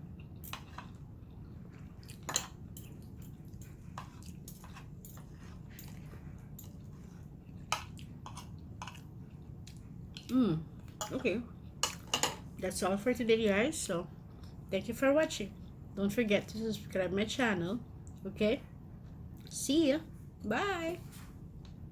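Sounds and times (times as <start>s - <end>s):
person chewing food: 0.0s - 11.0s
steady low hum: 0.0s - 21.9s.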